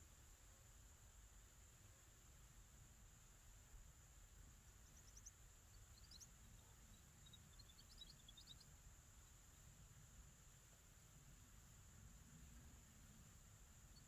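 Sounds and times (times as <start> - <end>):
small birds chirping: 4.8 - 9.4.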